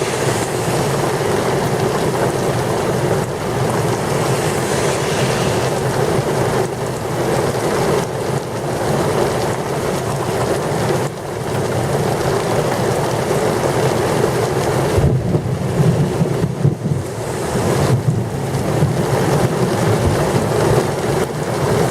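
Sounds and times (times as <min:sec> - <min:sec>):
low thunder rumbling: 0:00.0 - 0:08.4, 0:14.9 - 0:21.9
gusting wind: 0:00.0 - 0:10.9, 0:14.7 - 0:21.9
heavy rain pouring: 0:00.0 - 0:21.9.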